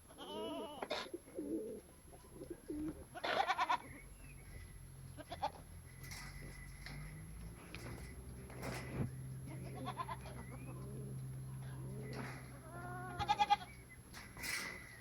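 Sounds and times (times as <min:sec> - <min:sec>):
goats bleating: 0:00.1 - 0:01.1, 0:03.1 - 0:03.9, 0:05.2 - 0:05.6, 0:09.4 - 0:10.9, 0:11.7 - 0:13.8
steady low hum: 0:05.7 - 0:15.0.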